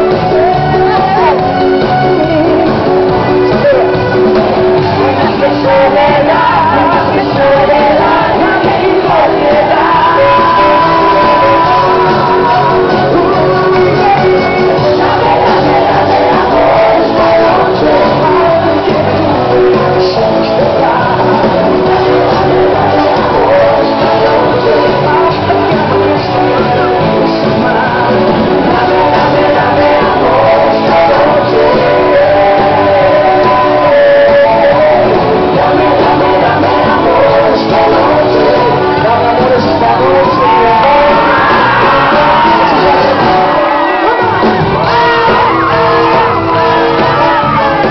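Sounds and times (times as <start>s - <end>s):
loud band music with singing: 0.0s - 47.9s
people shouting: 40.0s - 47.9s.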